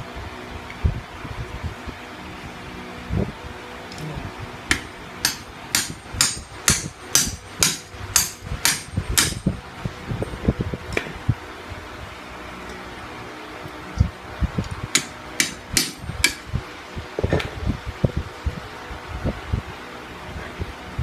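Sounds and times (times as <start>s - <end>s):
hammer striking metal: 4.7s - 9.6s, 14.9s - 16.5s.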